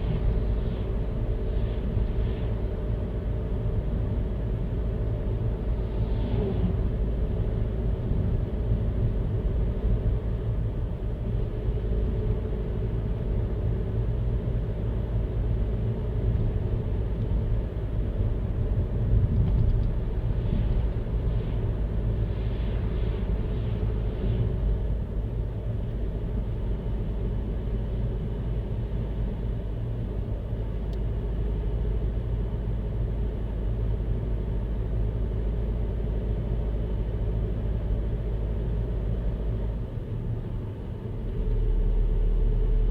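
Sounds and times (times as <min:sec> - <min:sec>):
car driving rumble: 0:00.0 - 0:42.9.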